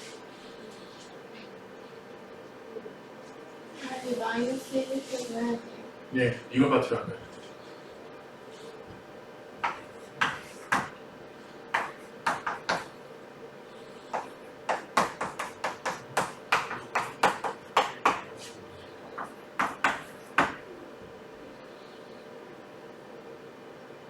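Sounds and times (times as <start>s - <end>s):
writing taps on a board: 9.6s - 11.0s, 11.8s - 12.9s, 14.1s - 18.4s, 19.2s - 20.6s.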